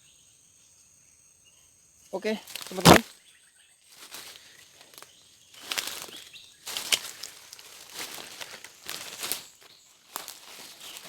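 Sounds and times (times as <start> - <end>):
rustling and crunching of leaves: 2.2 - 3.1, 3.9 - 11.0.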